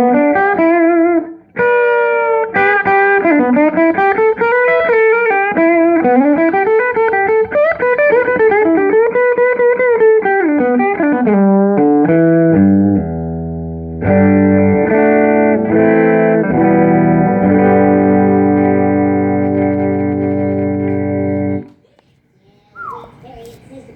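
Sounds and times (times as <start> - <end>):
electric guitar playing: 0.0 - 21.8.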